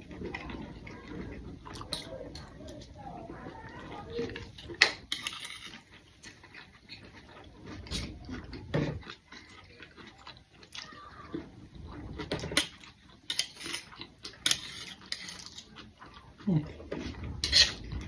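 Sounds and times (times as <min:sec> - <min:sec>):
chewing: 0:00.0 - 0:18.0.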